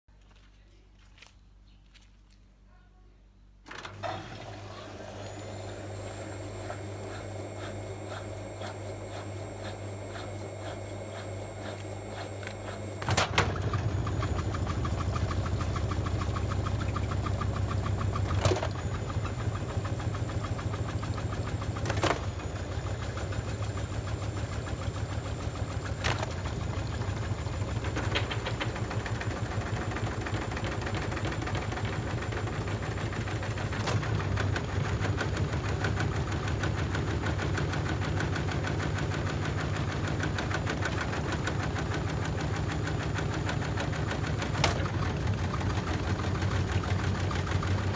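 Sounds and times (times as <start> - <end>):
washing machine drum spinning: 3.7 - 47.9.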